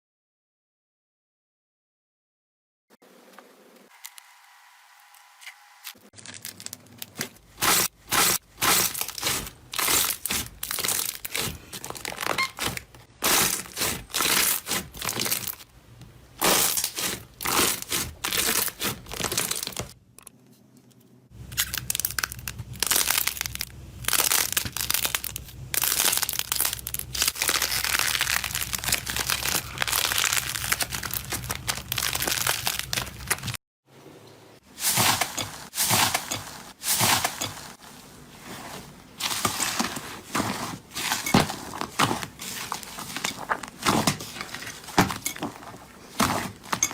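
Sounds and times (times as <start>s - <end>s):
slime crackling and popping: 21.5s - 33.6s.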